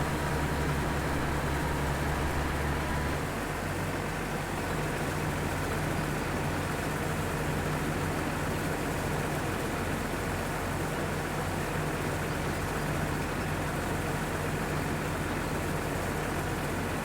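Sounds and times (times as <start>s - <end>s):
low engine hum: 0.0s - 3.5s.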